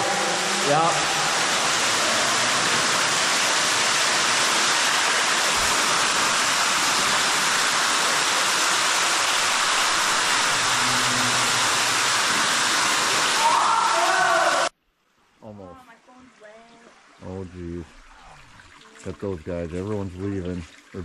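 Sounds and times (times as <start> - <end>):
waterfall cascading in a cave: 0.0 - 14.7.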